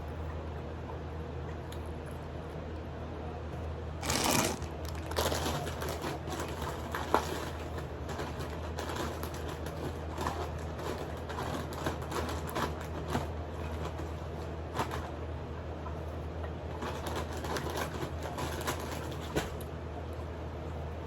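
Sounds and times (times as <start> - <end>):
person chewing and sucking: 4.0 - 5.3.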